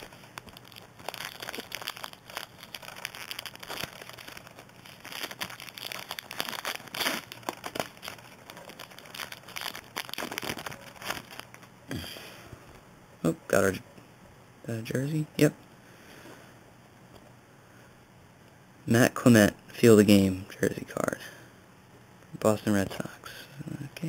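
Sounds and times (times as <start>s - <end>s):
cards crackling as shuffled: 0.0s - 11.7s
foil wrappers crinkling: 0.0s - 11.7s.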